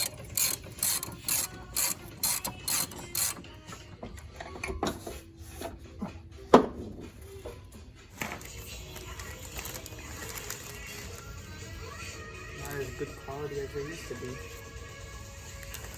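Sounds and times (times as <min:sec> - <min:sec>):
ratchet wrench clicking: 0:00.0 - 0:03.5.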